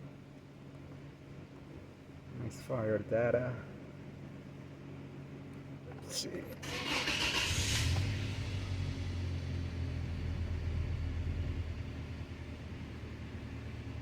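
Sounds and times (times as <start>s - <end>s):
engine idling: 6.5s - 14.0s.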